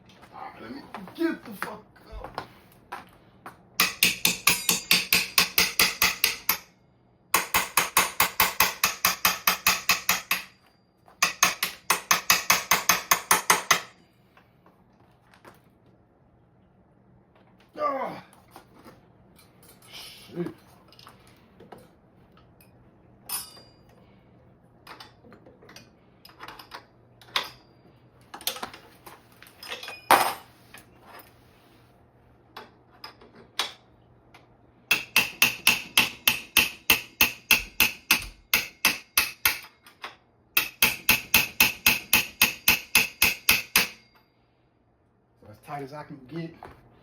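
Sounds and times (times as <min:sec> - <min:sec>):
hammer striking a wrench: 0:03.8 - 0:06.8, 0:07.4 - 0:14.0, 0:34.9 - 0:44.2.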